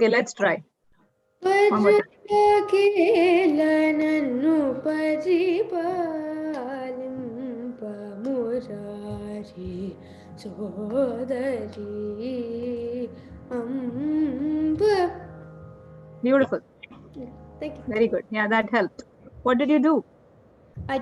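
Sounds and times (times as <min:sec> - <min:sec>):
woman singing: 0:01.4 - 0:15.3
shruti box drone: 0:01.4 - 0:19.7.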